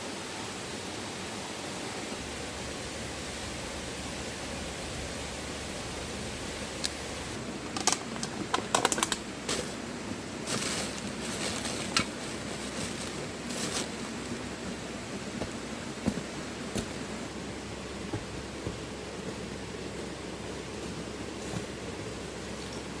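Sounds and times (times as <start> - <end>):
river water rushing: 0.1 - 7.7, 9.2 - 23.0
close handling rustling: 3.6 - 23.0
sharp clicks and rattles: 5.9 - 9.8.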